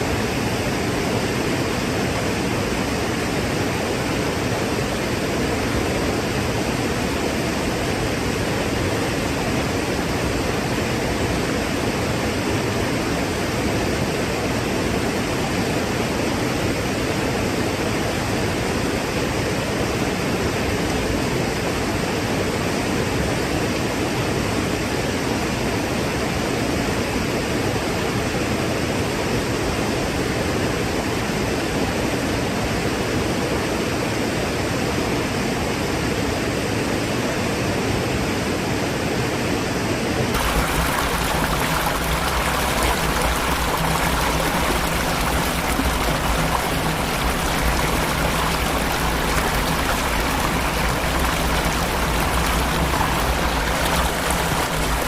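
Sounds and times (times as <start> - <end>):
falling water deep rumble: 40.4 - 55.0
waterfall rushing water: 40.4 - 55.0.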